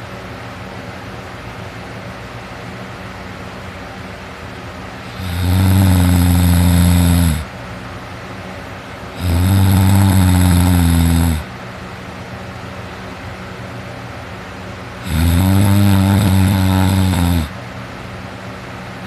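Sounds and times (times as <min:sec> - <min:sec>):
steady hiss: 0:00.0 - 0:19.0
person snoring loudly: 0:05.0 - 0:07.5, 0:09.1 - 0:11.5, 0:15.0 - 0:17.6.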